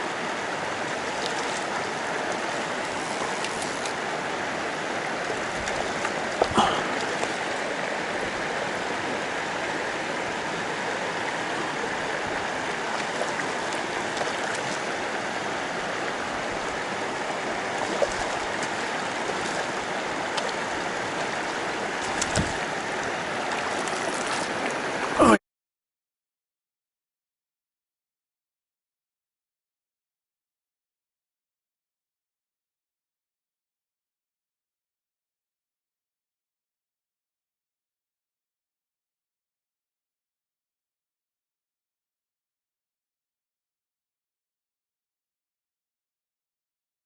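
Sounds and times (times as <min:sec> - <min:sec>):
river water rushing: 0:00.0 - 0:25.4.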